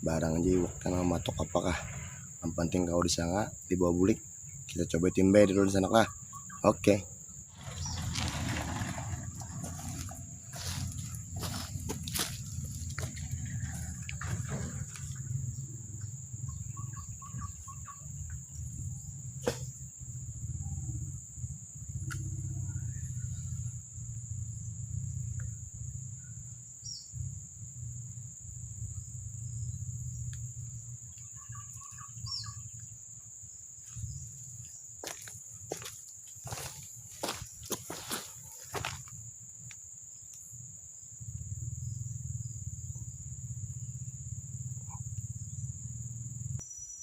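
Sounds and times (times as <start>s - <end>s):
high-pitched insect drone: 0.0s - 47.0s
bird chirps: 4.5s - 6.8s, 15.2s - 19.8s, 31.0s - 33.0s, 46.6s - 47.0s.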